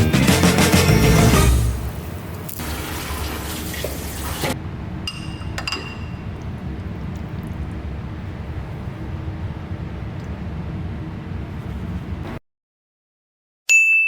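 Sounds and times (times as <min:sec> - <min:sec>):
steady low hum: 0:04.6 - 0:12.4
tableware clinking: 0:05.0 - 0:06.3.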